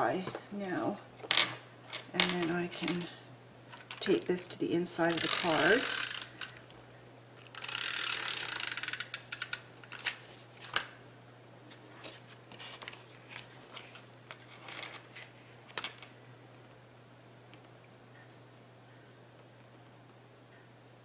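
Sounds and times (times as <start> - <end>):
paper rustling: 11.7 - 15.5.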